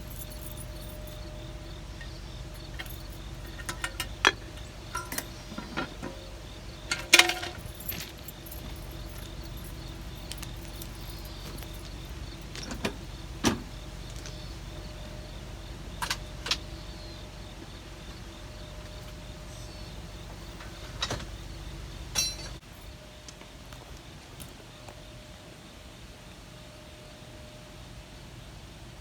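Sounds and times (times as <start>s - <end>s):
metallic clinks and knocks: 0.0s - 13.6s, 22.1s - 22.6s
engine idling: 0.0s - 29.0s.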